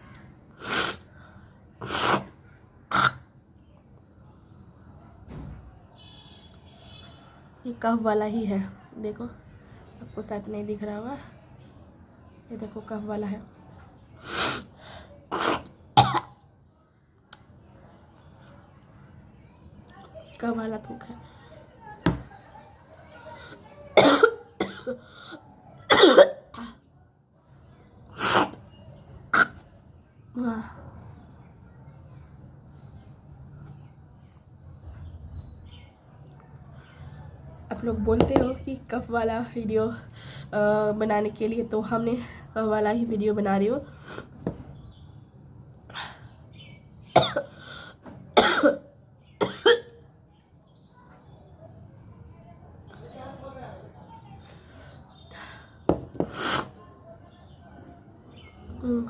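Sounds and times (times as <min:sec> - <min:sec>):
woman coughing and hawking: 0:15.3 - 0:16.4, 0:23.8 - 0:26.8, 0:47.2 - 0:47.6, 0:48.4 - 0:50.0.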